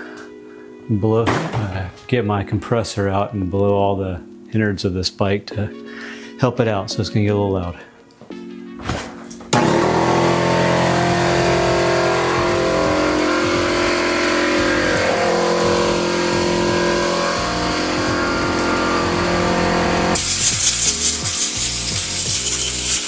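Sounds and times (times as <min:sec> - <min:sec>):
air compressor running: 0:09.5 - 0:23.0.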